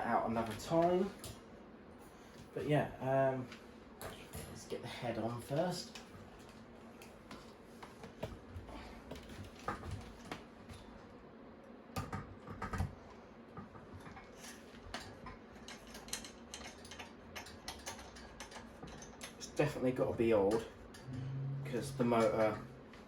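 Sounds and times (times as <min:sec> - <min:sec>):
metal parts clicking and knocking: 0:15.6 - 0:19.4.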